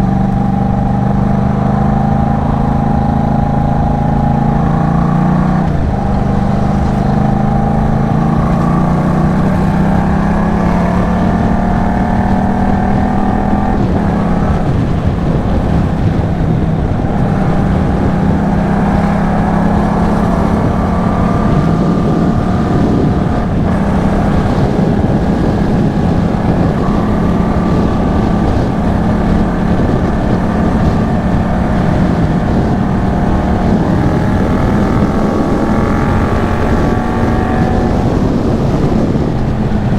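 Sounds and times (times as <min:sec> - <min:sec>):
motorcycle engine running: 0:00.0 - 0:39.9
wind rumbling on microphone: 0:00.0 - 0:39.9.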